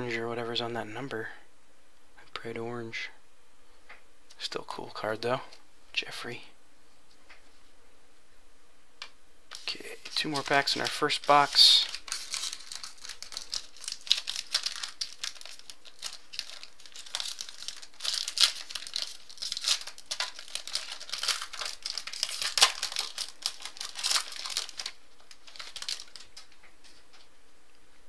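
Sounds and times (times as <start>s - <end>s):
plastic wrapper tearing and crinkling: 9.5s - 27.0s.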